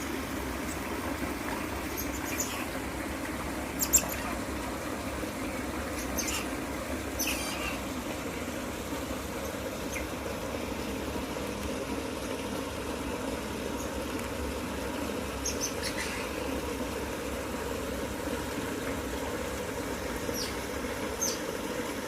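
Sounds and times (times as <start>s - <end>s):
otters squeaking and chirping: 1.9s - 2.8s, 3.8s - 4.4s, 5.9s - 7.9s, 15.4s - 16.4s.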